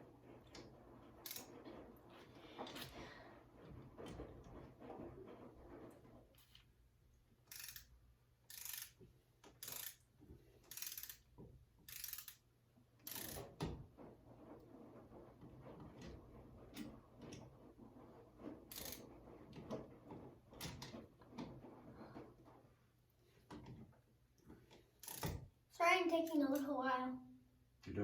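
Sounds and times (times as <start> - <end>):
ratcheting screwdriver clicks: 7.5 - 7.9, 8.5 - 10.0, 11.9 - 12.4.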